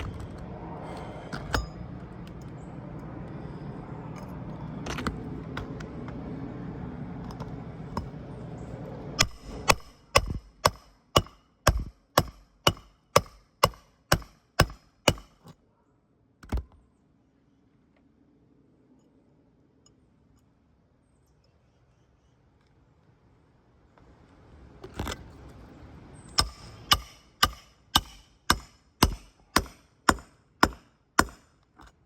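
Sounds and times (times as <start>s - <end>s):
hammer driving nails into shingle: 9.2s - 15.4s, 26.4s - 31.6s.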